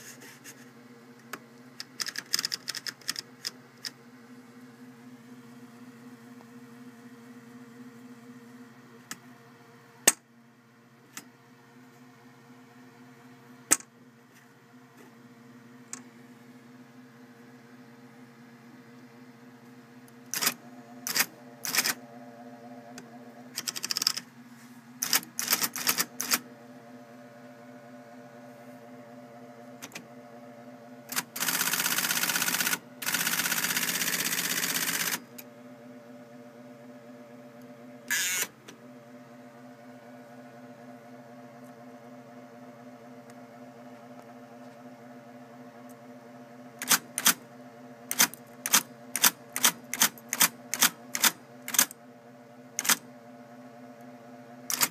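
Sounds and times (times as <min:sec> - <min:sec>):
typewriter motor humming: 0:01.8 - 0:04.0, 0:20.2 - 0:22.0, 0:23.5 - 0:24.3, 0:25.0 - 0:26.5, 0:31.1 - 0:35.4, 0:38.1 - 0:38.6, 0:46.8 - 0:47.5, 0:48.1 - 0:52.0, 0:52.8 - 0:53.0, 0:54.7 - 0:54.9
typewriter keystrokes striking: 0:01.9 - 0:03.2, 0:23.6 - 0:24.2, 0:25.0 - 0:26.4, 0:46.8 - 0:47.4, 0:48.1 - 0:51.9, 0:52.8 - 0:53.0
mechanical clatter: 0:20.3 - 0:22.0, 0:23.5 - 0:24.3, 0:54.7 - 0:54.9.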